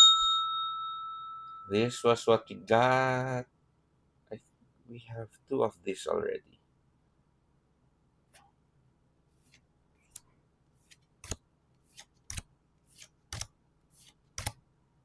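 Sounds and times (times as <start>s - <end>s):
cards swishing: 10.8s - 14.6s.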